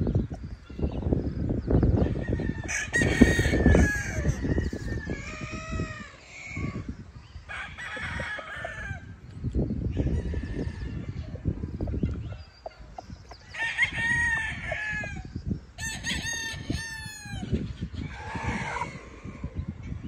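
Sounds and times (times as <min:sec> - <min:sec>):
roosters crowing: 0:01.9 - 0:09.2, 0:09.8 - 0:11.8, 0:13.4 - 0:20.0
chickens clucking: 0:10.9 - 0:15.6, 0:17.0 - 0:20.0.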